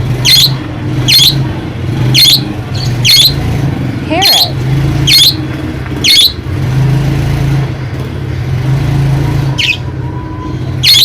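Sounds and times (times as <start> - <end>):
high falling squawks: 9.6 - 11.0.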